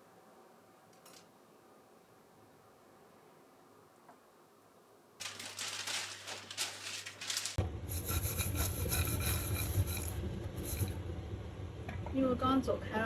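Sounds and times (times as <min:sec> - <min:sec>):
rough scraping strokes: 0:05.2 - 0:11.0.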